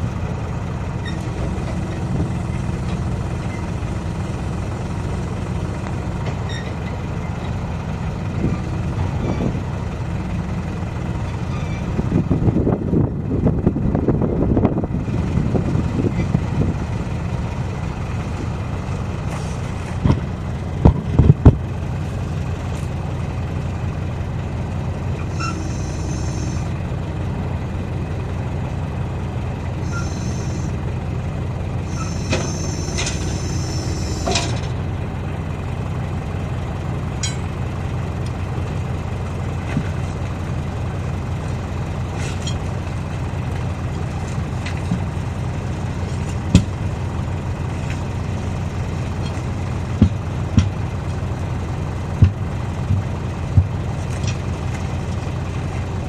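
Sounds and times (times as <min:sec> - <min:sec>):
diesel engine idling: 0:00.0 - 0:56.0
engine clattering: 0:00.0 - 0:56.0
sharp knocks: 0:46.5 - 0:46.7, 0:50.0 - 0:50.8, 0:52.2 - 0:53.7.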